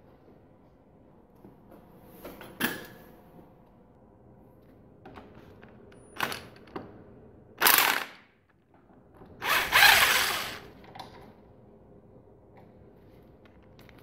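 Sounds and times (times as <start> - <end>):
power tool bursts: 7.6 - 8.2, 9.4 - 10.6.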